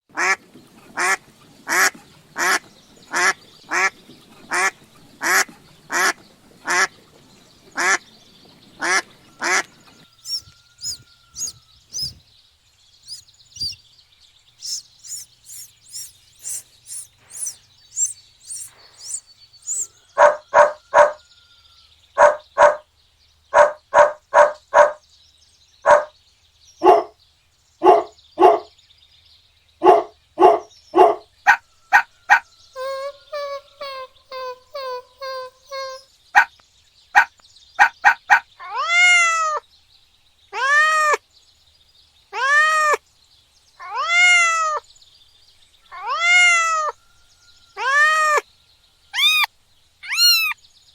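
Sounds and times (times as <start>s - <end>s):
ducks quacking: 0.2s - 6.9s, 7.8s - 8.0s, 8.8s - 9.7s, 10.3s - 12.2s, 13.1s - 13.8s, 14.6s - 21.2s, 49.2s - 50.6s
ducklings peeping: 8.8s - 12.2s, 13.1s - 13.8s, 14.6s - 21.2s, 29.9s - 36.5s, 37.2s - 38.4s, 49.2s - 50.6s.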